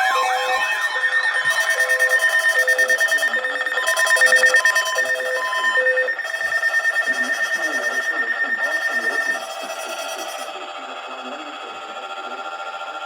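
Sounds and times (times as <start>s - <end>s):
lower repeating beep: 0.0s - 12.6s
alternating beep: 0.0s - 13.0s
fast pulsing beep: 0.0s - 13.0s
steady high alarm tone: 0.0s - 13.0s
faint voice: 7.0s - 12.6s.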